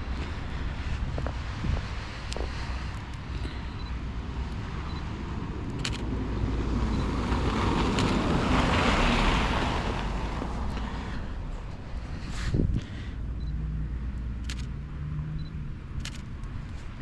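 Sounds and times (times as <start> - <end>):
wind rumble on microphone: 0.0 - 14.0
short clicks: 5.7 - 6.1, 14.4 - 14.8, 15.4 - 16.6.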